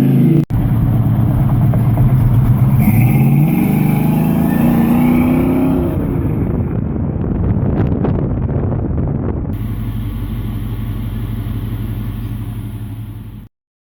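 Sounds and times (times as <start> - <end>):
pickup truck engine running: 0.5 - 7.3, 8.6 - 13.5.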